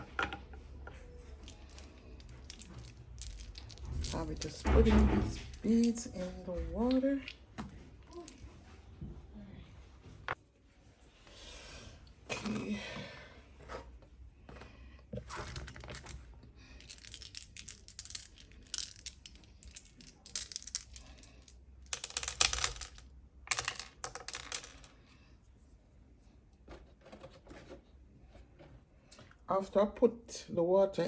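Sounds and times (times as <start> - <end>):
beads clicking and rattling: 1.2 - 4.7, 15.5 - 24.9.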